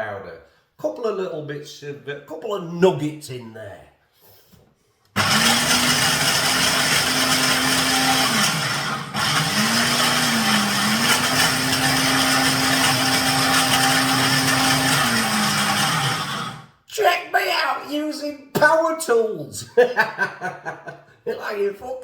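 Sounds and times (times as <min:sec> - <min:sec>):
electric blender whirring: 0:05.2 - 0:16.8.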